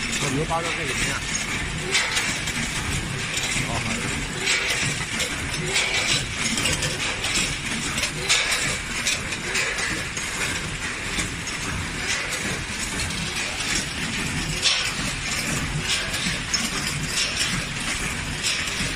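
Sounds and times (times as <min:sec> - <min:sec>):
packing machine running: 0:00.0 - 0:18.9.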